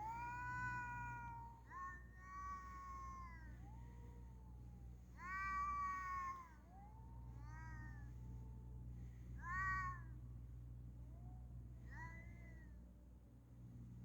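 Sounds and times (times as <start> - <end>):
cats yowling: 0.0 - 3.8, 5.1 - 6.7, 9.4 - 10.1.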